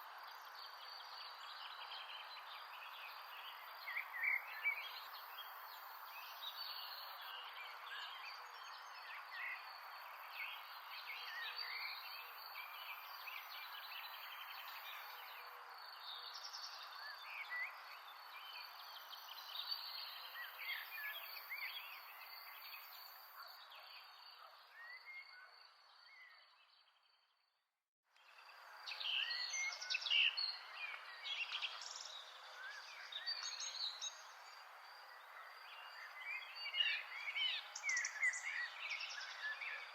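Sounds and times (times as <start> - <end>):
small birds chirping: 28.2 - 39.9.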